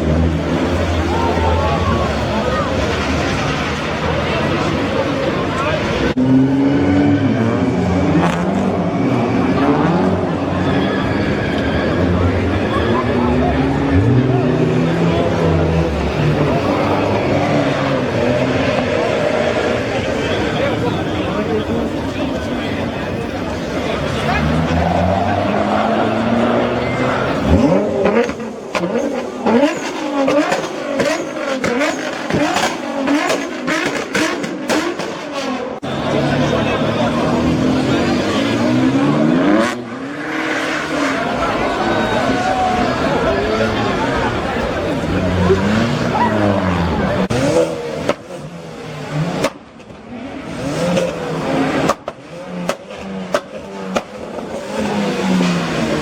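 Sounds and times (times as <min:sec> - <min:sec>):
car engine revving: 0:00.0 - 0:56.0
exhaust pops and crackles: 0:51.8 - 0:54.8.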